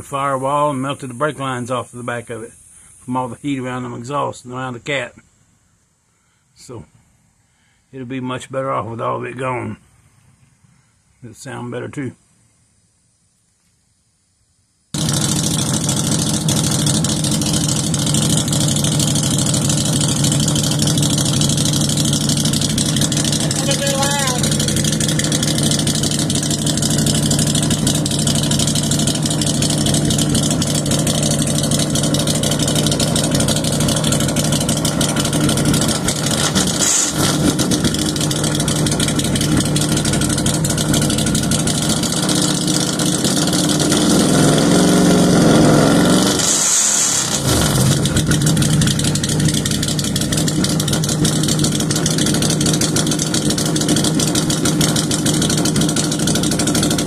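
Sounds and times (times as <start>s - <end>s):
engine idling and revving: 15.0s - 57.0s.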